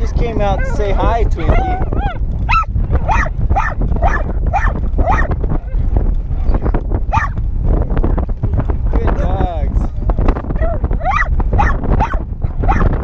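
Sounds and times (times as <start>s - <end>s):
steady low rumble: 0.0s - 13.0s
dog barking: 0.6s - 5.8s, 7.1s - 7.4s, 10.6s - 13.0s.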